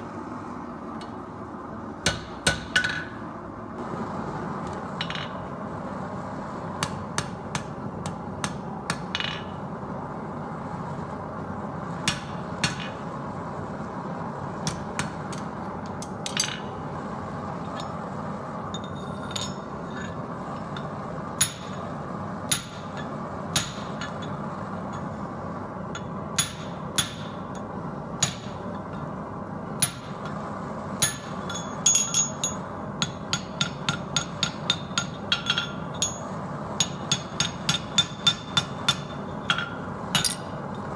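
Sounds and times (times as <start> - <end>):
hammer striking steel on anvil: 2.0 - 3.2, 6.8 - 9.6, 12.0 - 13.0, 14.6 - 16.8, 18.8 - 21.9, 22.5 - 25.1, 25.9 - 29.1, 29.8 - 30.3, 31.0 - 40.7.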